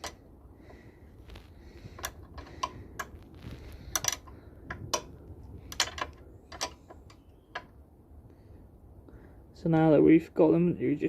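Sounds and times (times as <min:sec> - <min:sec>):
spanner metallic clicks and taps: 0:03.9 - 0:07.7.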